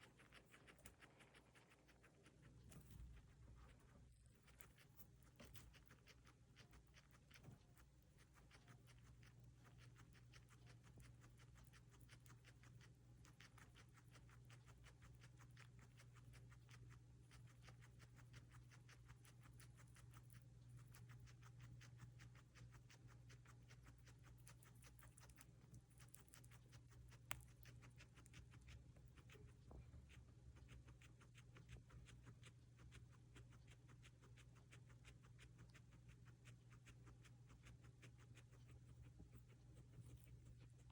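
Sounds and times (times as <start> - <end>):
guinea pig chewing: 0.0 - 40.9.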